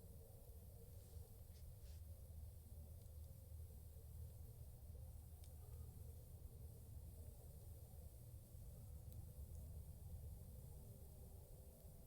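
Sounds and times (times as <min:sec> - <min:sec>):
faint tick: 0:05.4 - 0:05.8.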